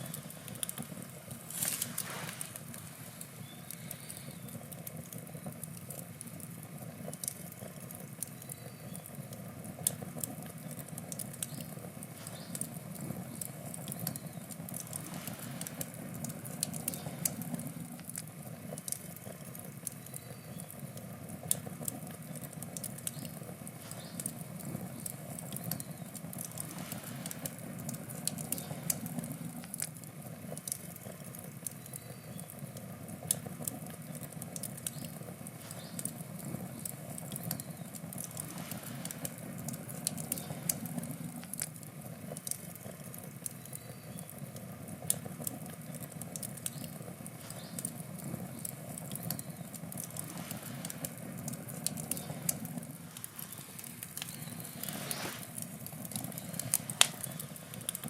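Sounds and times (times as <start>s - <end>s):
campfire crackling: 0.0s - 58.0s.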